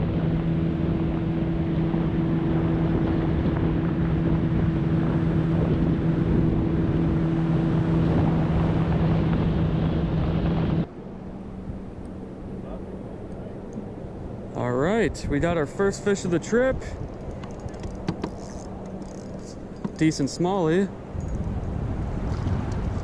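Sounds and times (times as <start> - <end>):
outboard motor running: 0.0 - 23.0
water rushing: 0.0 - 23.0
wind on microphone: 0.0 - 23.0.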